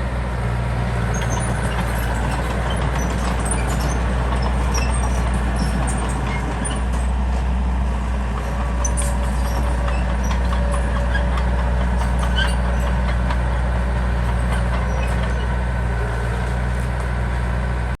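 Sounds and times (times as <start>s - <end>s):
heavy diesel engine running: 0.0s - 18.0s
light clicks and squeaks: 8.8s - 13.4s, 14.2s - 17.1s.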